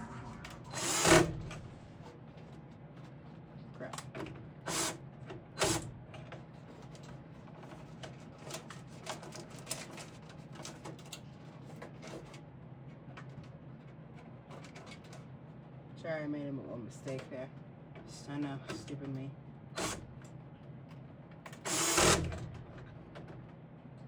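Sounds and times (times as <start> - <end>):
low steady hum: 0.0 - 4.1.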